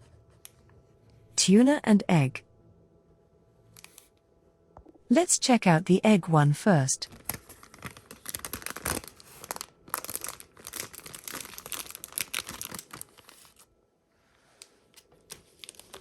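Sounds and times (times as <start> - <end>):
plastic wrapper crinkling: 7.1 - 13.7, 15.0 - 16.0.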